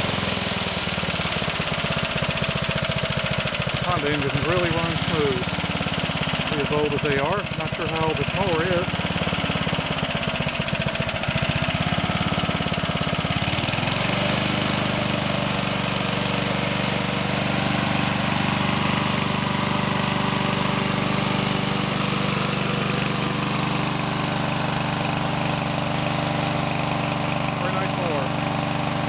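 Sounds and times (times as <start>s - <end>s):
lawn mower engine running: 0.0s - 29.0s.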